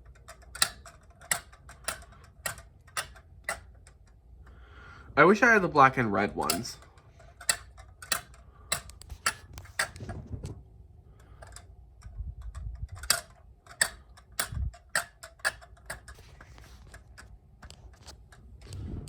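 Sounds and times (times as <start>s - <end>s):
kinetic toy clicking and ticking: 0.0s - 4.2s, 6.2s - 9.9s, 12.6s - 16.2s.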